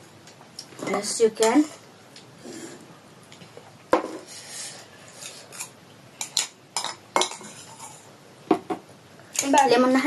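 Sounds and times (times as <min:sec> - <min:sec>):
cutlery clinking against dishes: 0:05.2 - 0:08.1.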